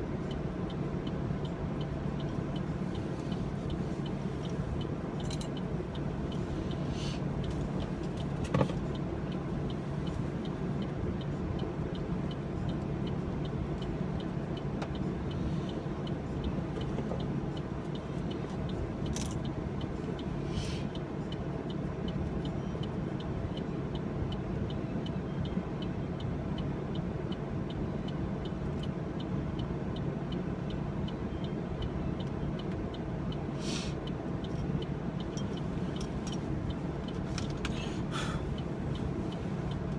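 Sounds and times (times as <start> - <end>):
car cabin hum: 0.0 - 22.2
faint regular ticking: 0.1 - 39.9.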